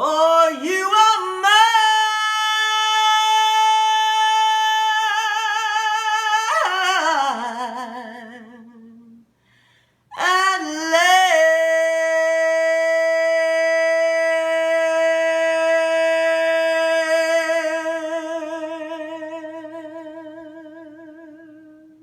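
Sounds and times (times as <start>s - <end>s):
woman singing unaccompanied: 0.0s - 9.2s, 10.2s - 22.0s.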